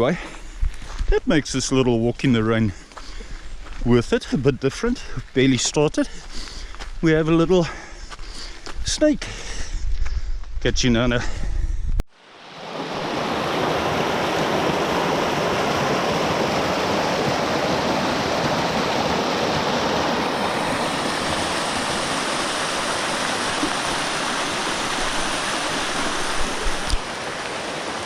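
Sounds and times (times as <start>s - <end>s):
rushing water: 12.1s - 28.0s.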